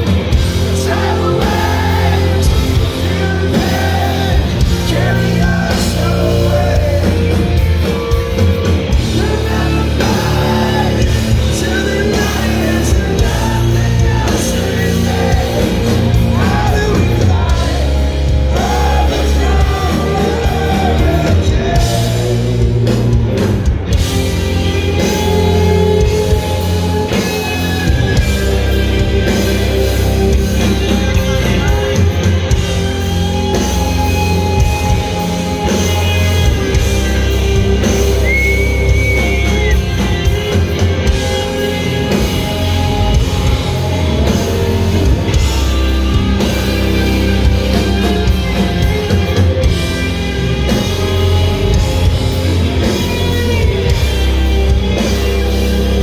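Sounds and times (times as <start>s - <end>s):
rock band playing: 0.0s - 56.0s
person singing: 0.6s - 8.4s, 9.0s - 23.5s.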